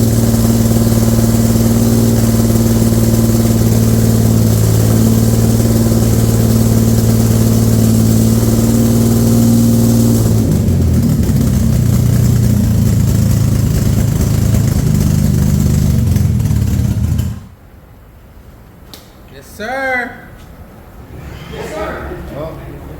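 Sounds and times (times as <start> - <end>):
car engine running rough: 0.0 - 17.6.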